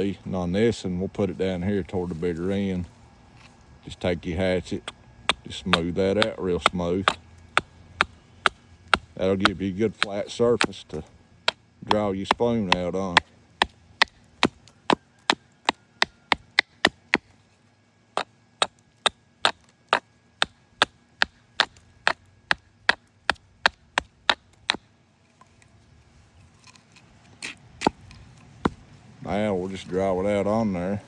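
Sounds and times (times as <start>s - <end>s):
hatchet chopping wood: 4.8s - 11.0s, 11.9s - 17.3s, 18.6s - 24.8s, 27.8s - 28.8s.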